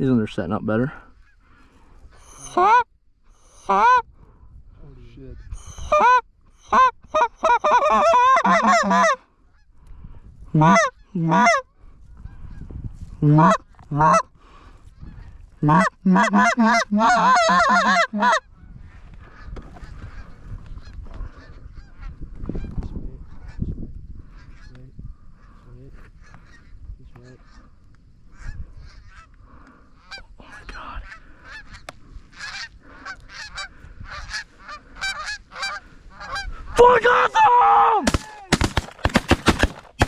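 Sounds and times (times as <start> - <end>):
goose honking and clucking: 2.2 - 4.1, 5.4 - 9.7, 10.6 - 12.6, 13.2 - 14.3, 15.0 - 22.7, 28.3 - 36.8.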